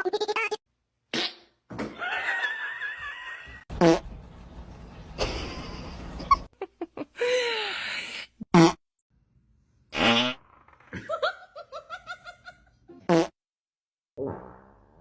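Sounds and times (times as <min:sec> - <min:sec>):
fart noises: 0:03.7 - 0:04.1, 0:08.5 - 0:08.8, 0:09.9 - 0:11.0, 0:13.0 - 0:13.4, 0:14.2 - 0:15.0.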